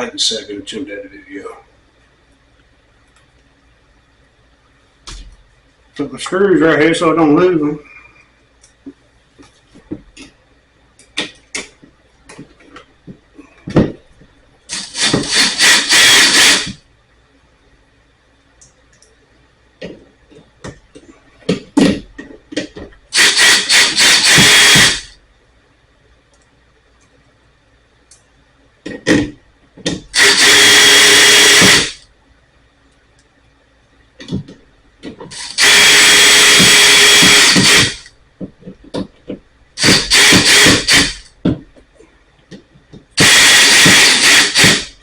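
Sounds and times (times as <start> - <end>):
cordless drill running: 14.7 - 16.8, 23.2 - 25.1, 30.2 - 32.0, 35.3 - 38.1, 39.8 - 41.2, 43.2 - 45.0.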